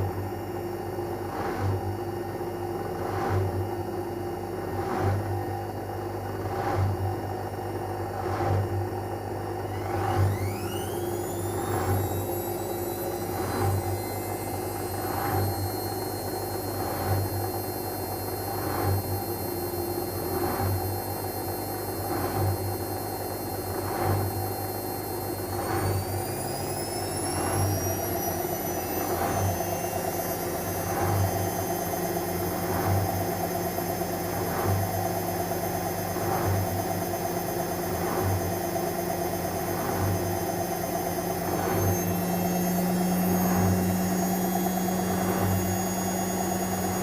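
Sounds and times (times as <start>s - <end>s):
washing machine motor whine: 0.0s - 47.0s.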